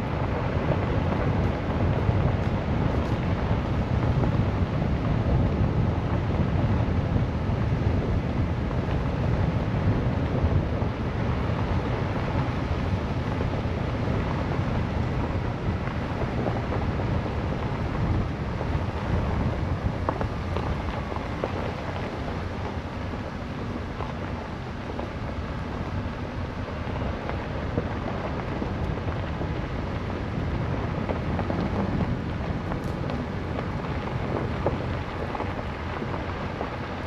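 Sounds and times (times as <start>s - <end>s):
wind blowing across microphone: 0.0s - 37.0s.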